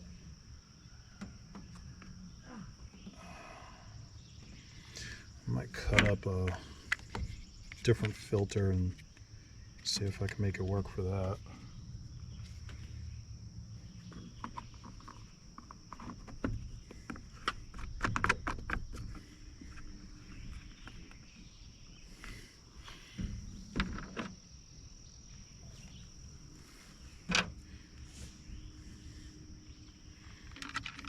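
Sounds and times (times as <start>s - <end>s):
small parts clicking and knocking: 30.2s - 31.0s.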